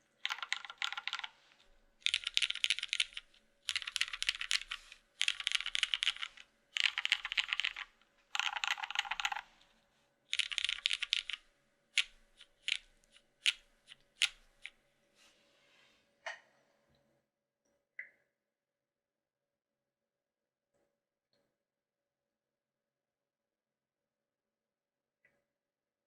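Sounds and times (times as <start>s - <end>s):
mechanical keyboard typing: 0.0s - 9.6s, 10.3s - 11.4s, 12.0s - 14.7s.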